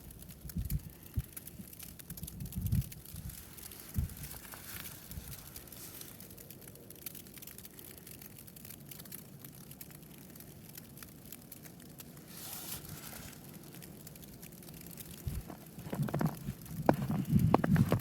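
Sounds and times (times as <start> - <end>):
footsteps crunching in deep snow: 15.4 - 18.0.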